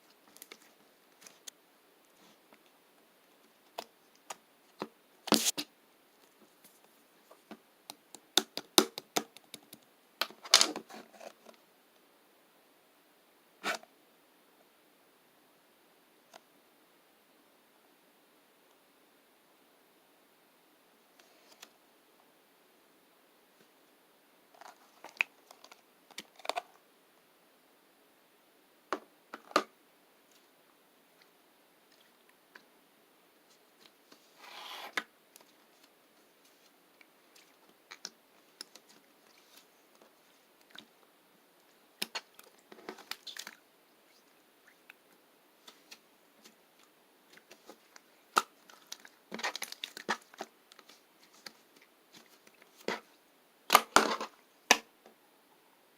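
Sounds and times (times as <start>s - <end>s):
crackly slime squishes: 47.3s - 51.6s.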